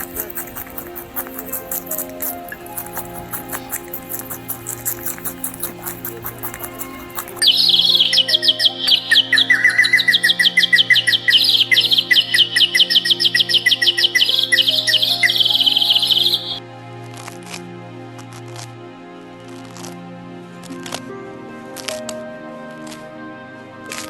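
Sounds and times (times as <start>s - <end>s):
bird chirping rapidly: 0.0s - 16.6s
background music drone: 0.0s - 24.0s.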